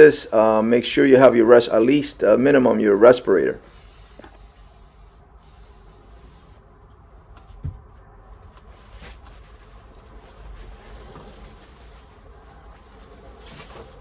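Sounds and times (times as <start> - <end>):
spray can hissing: 0.0 - 6.6.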